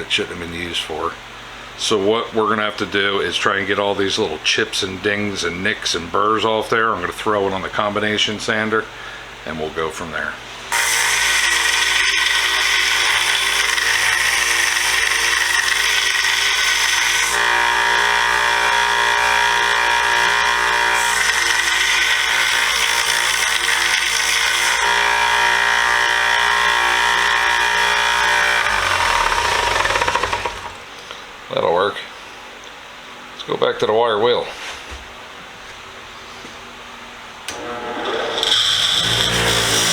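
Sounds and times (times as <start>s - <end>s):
sander grinding metal wrench: 10.7s - 30.8s, 37.5s - 39.9s
sander motor winding down: 10.7s - 30.9s, 37.5s - 39.9s.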